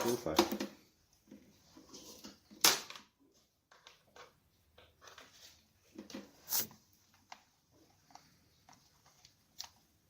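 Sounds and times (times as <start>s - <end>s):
plastic parts clicking and knocking: 0.0s - 1.5s, 2.1s - 6.4s
plastic scrape: 5.0s - 7.0s.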